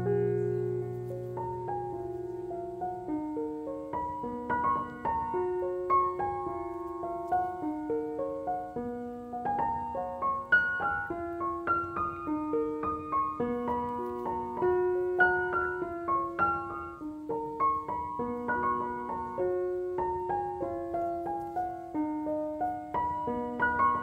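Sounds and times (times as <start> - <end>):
gentle piano music: 0.0 - 24.0.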